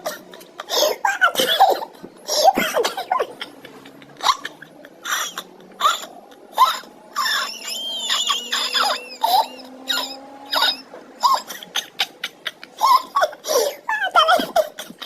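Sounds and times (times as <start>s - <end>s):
boy laughing: 0.0s - 15.0s
boy squealing: 4.2s - 15.0s.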